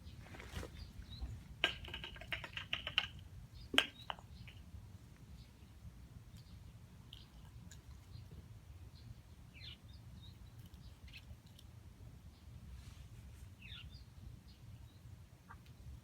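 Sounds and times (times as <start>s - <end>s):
faint bird chirps: 13.6s - 16.0s.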